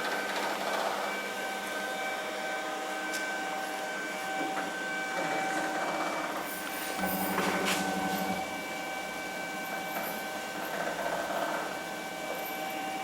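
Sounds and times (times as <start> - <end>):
machine motor whine: 6.6 - 9.2.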